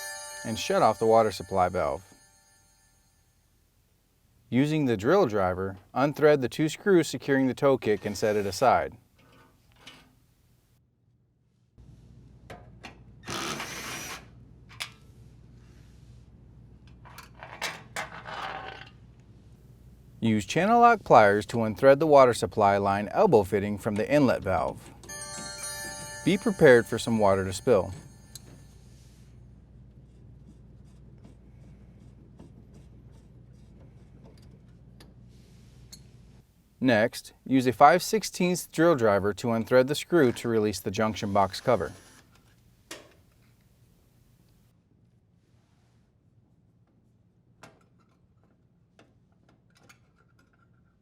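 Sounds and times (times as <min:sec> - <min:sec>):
cordless drill running: 0:13.3 - 0:14.2.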